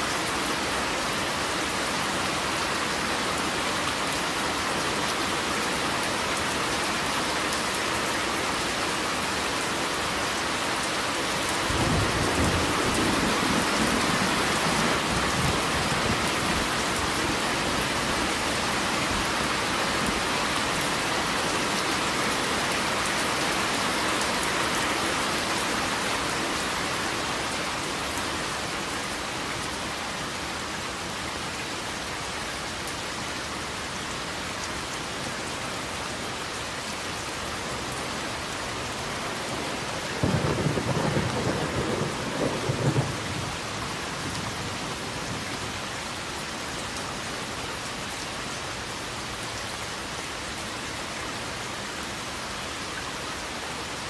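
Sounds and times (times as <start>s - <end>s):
steady rain: 0.0s - 54.0s
low rolling thunder: 39.8s - 45.5s.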